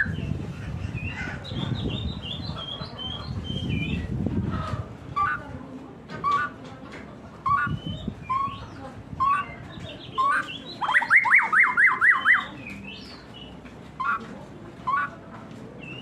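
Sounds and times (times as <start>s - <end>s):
songbird whistling: 7.5s - 13.1s.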